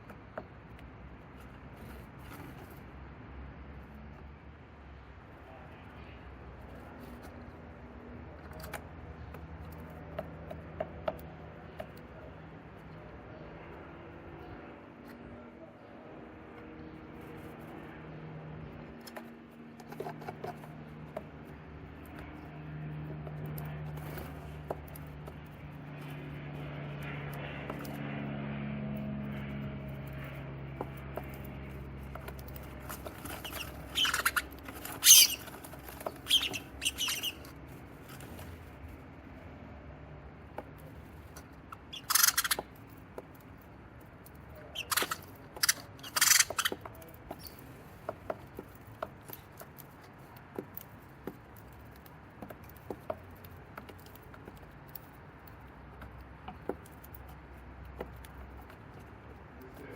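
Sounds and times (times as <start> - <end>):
sparrows chirping: 29.4 - 38.7, 40.9 - 50.4.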